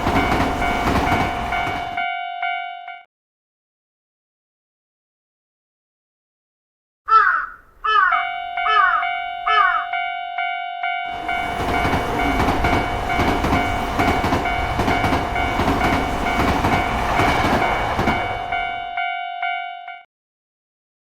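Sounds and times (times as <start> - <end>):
train wheels clattering on rails: 0.0 - 2.0, 11.1 - 18.9
level crossing alarm chiming: 0.0 - 3.1, 8.1 - 20.1.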